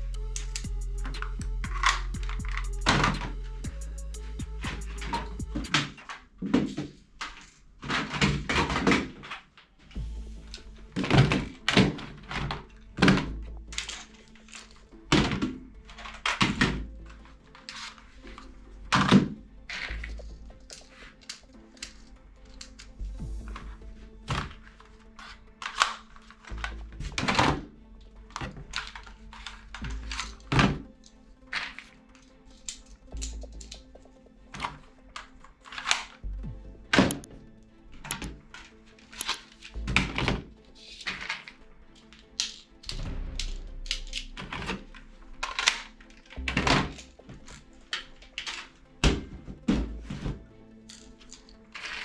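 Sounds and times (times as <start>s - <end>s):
background music: 0.0s - 52.0s
sharp click: 37.0s - 37.3s, 38.1s - 38.3s, 39.2s - 39.4s.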